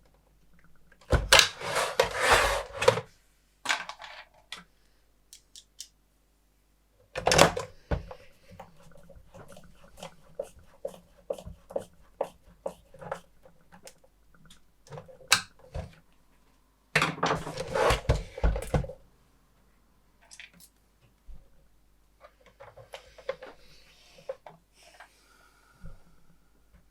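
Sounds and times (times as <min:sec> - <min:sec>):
clattering of parts being handled: 0:20.2 - 0:20.8.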